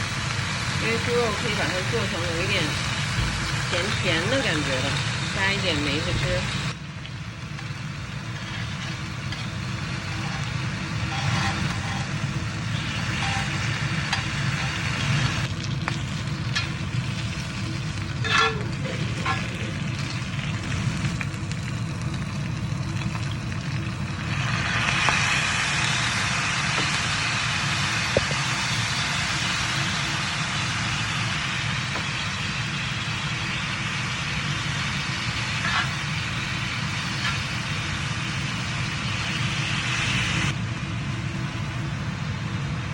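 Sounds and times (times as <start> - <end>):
low hum: 0.0 - 39.8
meat sizzling in a pan: 0.0 - 42.9
cooking utensils clinking: 18.2 - 19.7.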